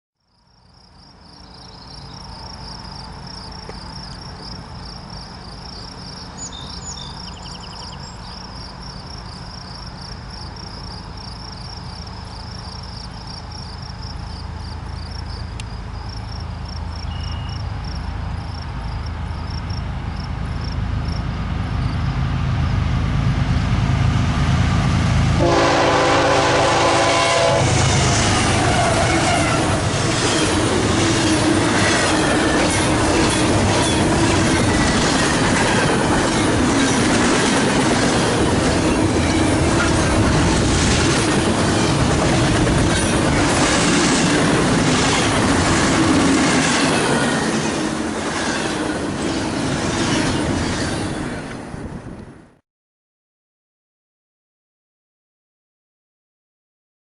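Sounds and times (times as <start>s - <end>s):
diesel locomotive rumble: 1.4s - 52.3s
locomotive horn blasts: 25.4s - 29.9s.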